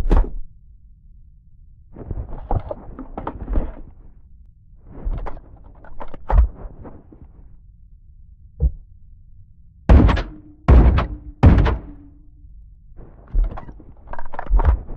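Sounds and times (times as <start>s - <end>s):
low steady hum: 0.0s - 14.9s
thud: 9.9s - 12.2s.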